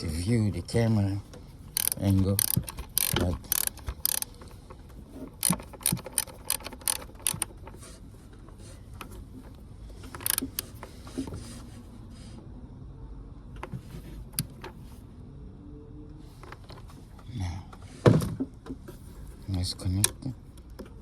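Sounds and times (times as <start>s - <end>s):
tool handling clicks and knocks: 1.2s - 8.0s, 9.0s - 11.4s
socket ratchet clicking: 1.7s - 4.6s, 5.3s - 7.8s, 10.1s - 10.8s.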